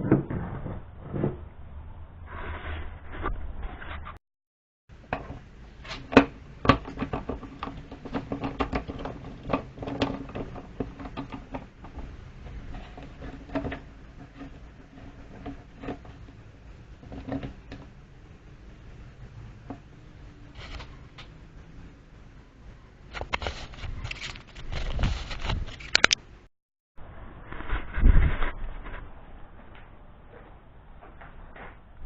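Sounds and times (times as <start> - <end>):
plastic clicks and knocks: 6.0 - 16.3.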